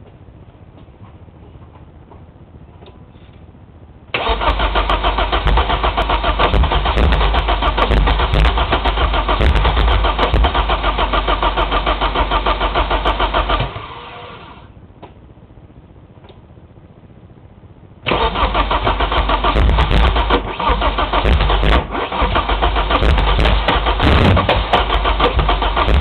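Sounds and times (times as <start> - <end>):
engine cranking on starter: 4.1 - 14.6, 18.0 - 26.0.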